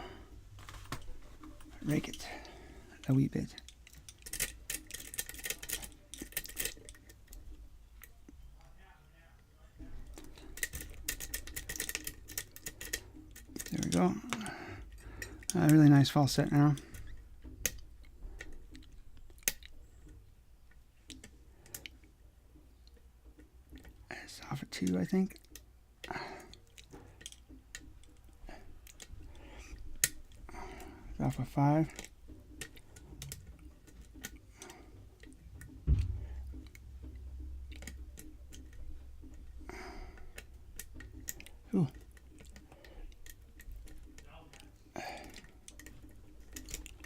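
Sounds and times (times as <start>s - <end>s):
lock pick clicking on pins: 3.1s - 8.2s, 10.1s - 22.1s, 24.8s - 47.0s
lock pick clicks and ticks: 3.6s - 7.4s, 10.1s - 22.1s
dull thump: 35.8s - 36.6s.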